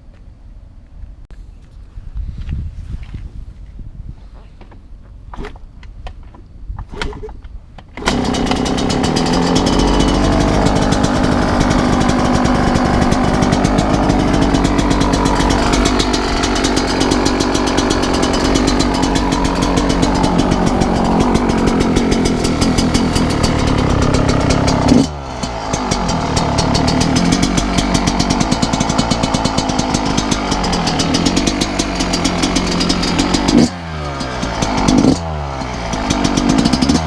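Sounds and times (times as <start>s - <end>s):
two-stroke motorcycle engine running: 8.0s - 37.0s.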